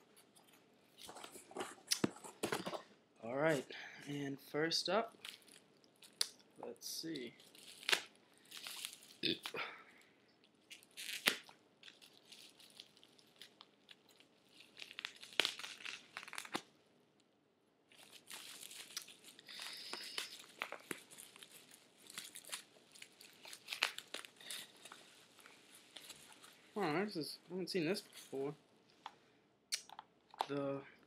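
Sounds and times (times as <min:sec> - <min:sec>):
paper and packing material tearing: 0:10.7 - 0:16.6, 0:18.0 - 0:25.0.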